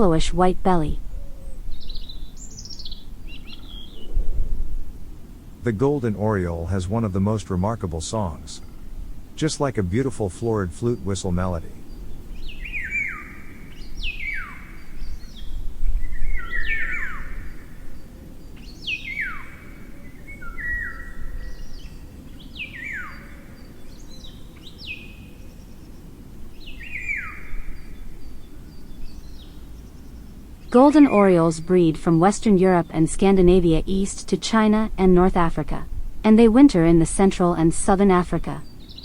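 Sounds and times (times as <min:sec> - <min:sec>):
low background rumble: 0:00.0 - 0:18.6, 0:27.6 - 0:39.0
bird singing fluting whistles: 0:12.4 - 0:18.0, 0:18.6 - 0:25.4, 0:26.6 - 0:29.7.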